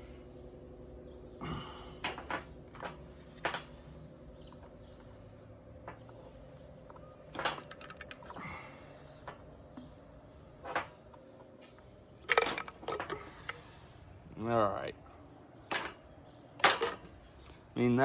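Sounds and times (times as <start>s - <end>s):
faint steady hum: 0.0s - 18.0s
clicks of plastic and metal parts: 7.3s - 8.4s, 12.2s - 13.7s, 15.7s - 17.1s.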